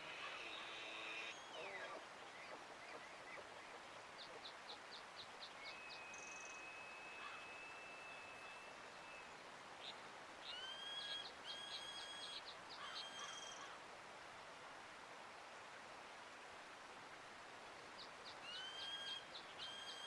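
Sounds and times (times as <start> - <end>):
songbirds calling: 0.0 - 13.8, 18.0 - 20.0
running water hiss: 0.0 - 20.0.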